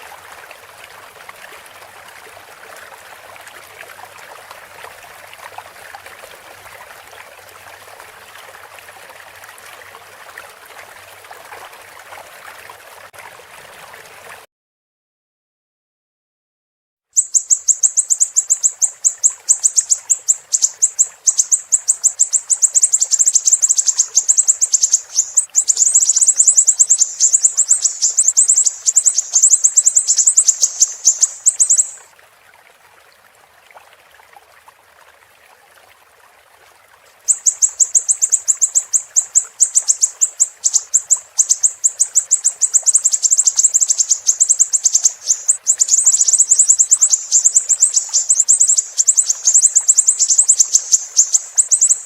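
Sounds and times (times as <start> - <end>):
flowing water: 0.0 - 14.5, 17.2 - 52.0
bird chirping rapidly: 17.2 - 32.1, 37.3 - 52.0.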